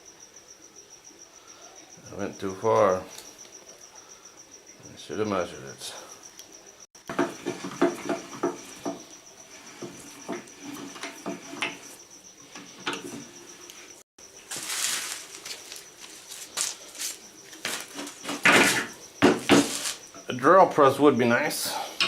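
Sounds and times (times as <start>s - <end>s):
crickets chirping: 0.0s - 22.0s
wood and tools knocking: 7.0s - 11.9s, 12.5s - 13.4s, 17.5s - 20.0s.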